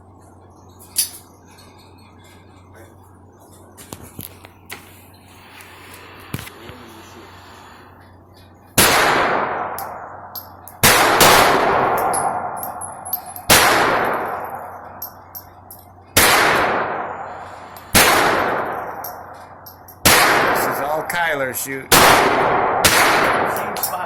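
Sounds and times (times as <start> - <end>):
pistol shots with echo: 8.8 - 12.8, 13.4 - 14.6, 16.2 - 19.3, 20.0 - 21.1, 21.9 - 23.9.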